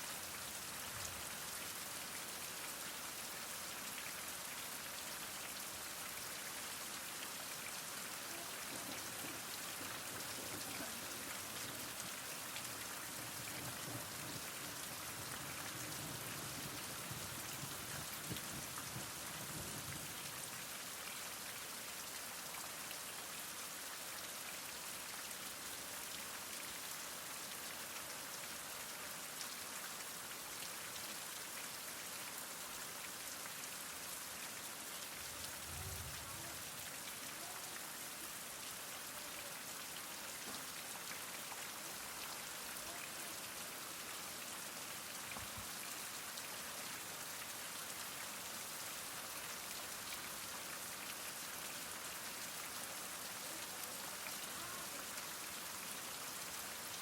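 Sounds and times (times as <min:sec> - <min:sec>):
heavy rain falling: 0:05.4 - 0:21.0, 0:33.7 - 0:57.0.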